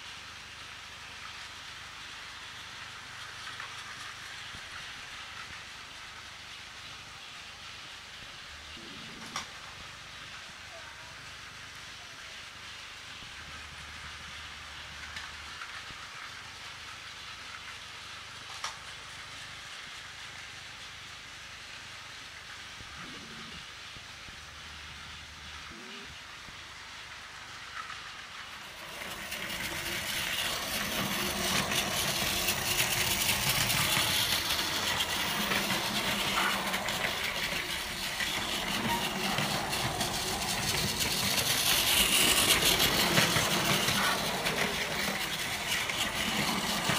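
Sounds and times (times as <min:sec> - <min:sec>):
toy train motor whirring: 0:00.7 - 0:21.5, 0:25.6 - 0:46.9
toy train wheels rattling: 0:01.1 - 0:06.2, 0:14.2 - 0:20.6, 0:27.3 - 0:46.9.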